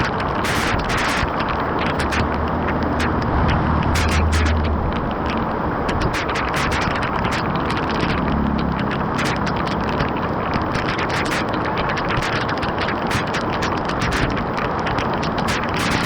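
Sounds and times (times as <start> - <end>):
water rushing and splashing: 0.0 - 16.0.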